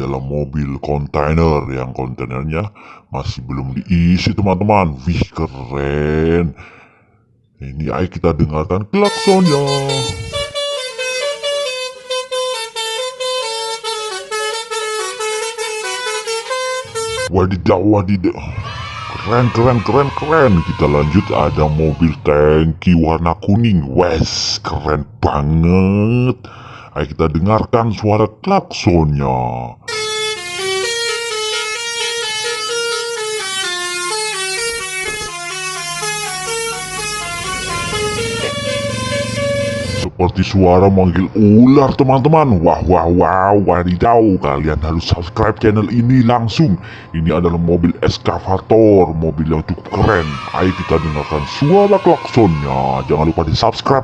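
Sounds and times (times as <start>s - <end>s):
truck horn changing pitch: 9.0s - 17.4s, 29.9s - 40.1s.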